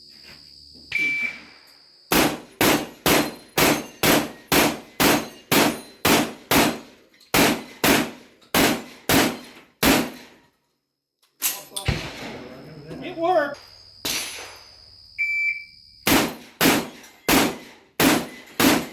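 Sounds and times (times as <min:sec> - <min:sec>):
shotgun shots: 0:02.1 - 0:10.4, 0:11.8 - 0:12.6, 0:16.1 - 0:18.9.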